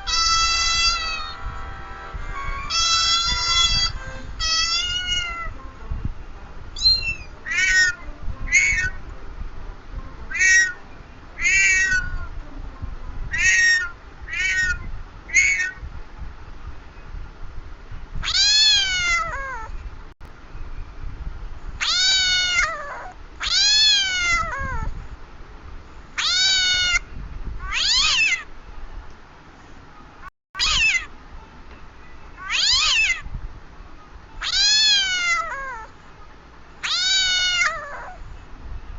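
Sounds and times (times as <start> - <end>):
cat meowing: 0.0 - 1.4, 2.6 - 5.6, 6.8 - 9.0, 10.3 - 10.8, 11.4 - 12.3, 13.3 - 15.8, 18.2 - 19.7, 21.8 - 24.9, 26.2 - 27.0, 27.6 - 28.5, 30.6 - 31.1, 32.4 - 33.3, 34.4 - 35.9, 36.8 - 38.2
low rumble: 0.0 - 10.3.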